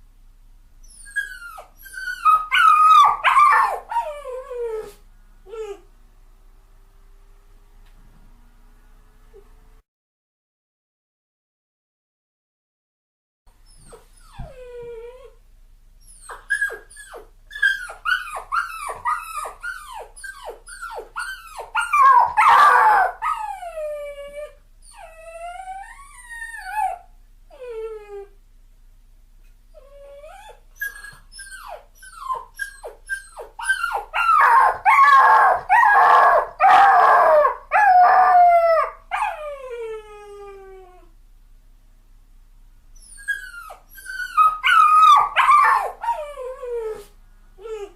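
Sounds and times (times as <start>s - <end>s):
puppy crying: 0.8s - 5.8s, 16.0s - 28.3s, 29.8s - 41.1s, 43.0s - 47.9s.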